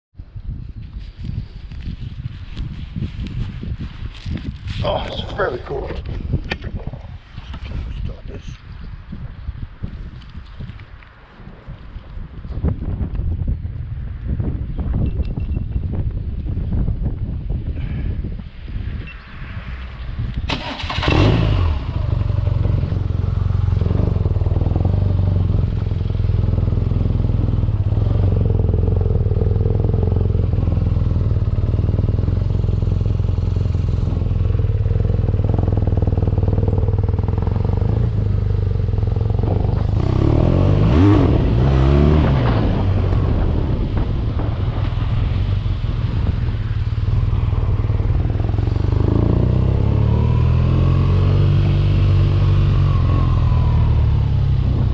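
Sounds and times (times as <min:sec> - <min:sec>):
motorcycle engine running: 0:20.5 - 0:50.1.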